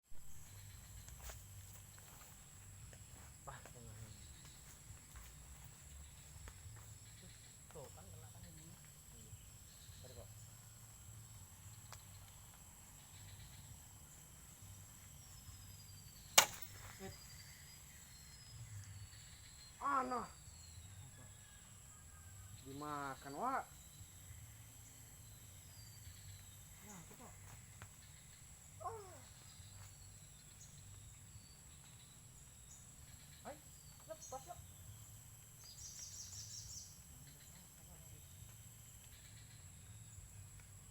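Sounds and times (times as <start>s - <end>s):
insects chirring: 0.2s - 40.9s
sharp crack: 16.3s - 17.2s
faint calls: 26.8s - 29.9s.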